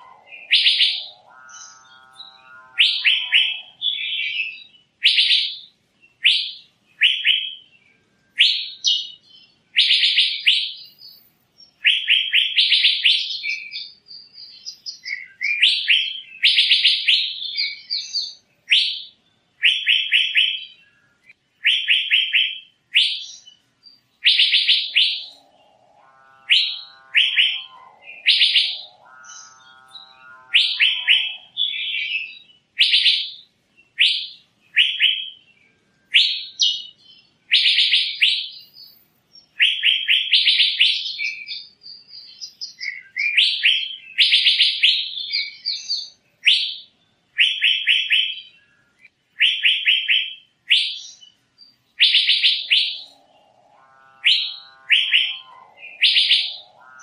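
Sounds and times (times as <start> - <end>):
lower drawn-out bird call: 0.0 - 5.5, 19.6 - 33.2, 51.8 - 57.0
bird rapid high notes: 52.0 - 57.0.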